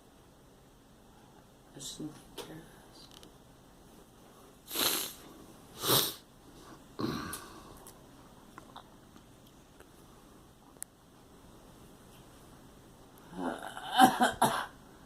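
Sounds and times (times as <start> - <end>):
girl sniffing: 4.7 - 6.2.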